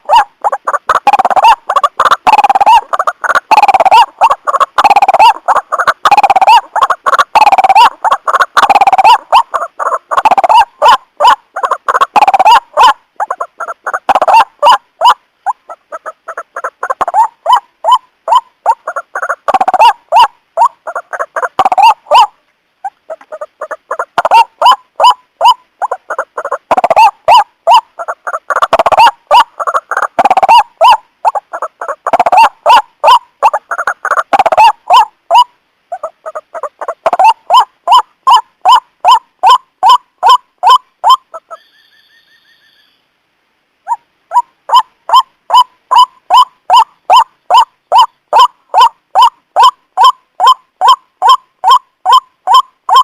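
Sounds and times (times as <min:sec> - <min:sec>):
waterhen harsh repeated calls: 0:00.0 - 0:42.9, 0:43.8 - 0:53.0
faint higher bird call: 0:37.2 - 0:43.2.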